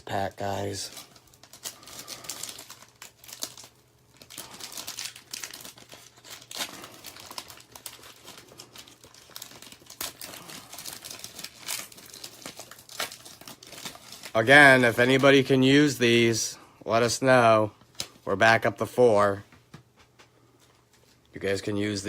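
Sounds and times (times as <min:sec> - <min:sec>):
foil wrapper crinkling and tearing: 0:00.0 - 0:16.1.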